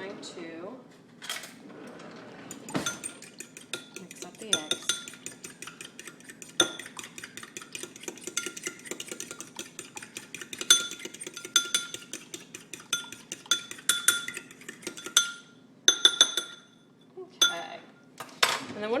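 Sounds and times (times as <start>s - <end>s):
whisk clinking against bowl: 2.5s - 16.8s, 17.4s - 17.7s.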